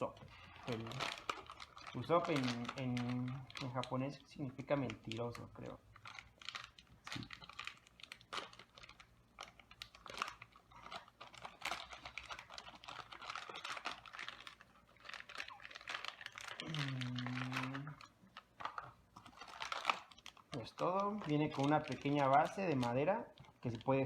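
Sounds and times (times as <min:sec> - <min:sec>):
packaging crinkling and rustling: 0:00.0 - 0:24.0
low voice humming: 0:16.6 - 0:18.0.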